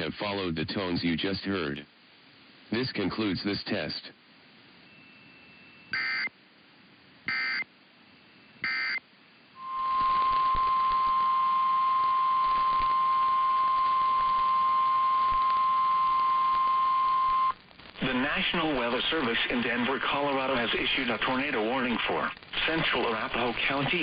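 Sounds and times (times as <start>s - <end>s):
radio hiss: 0.0s - 4.7s, 9.6s - 24.0s
steady alarm tone: 5.0s - 6.3s, 7.3s - 7.6s, 8.2s - 9.0s, 9.6s - 17.5s.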